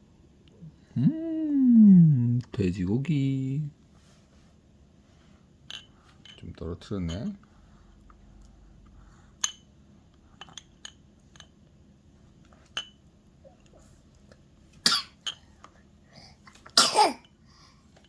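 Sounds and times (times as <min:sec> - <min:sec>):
baby sneezing: 0:14.8 - 0:15.2, 0:16.7 - 0:17.2.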